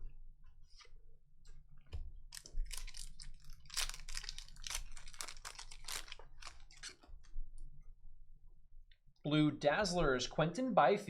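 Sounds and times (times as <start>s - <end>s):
foil wrapper crinkling: 2.4s - 7.1s.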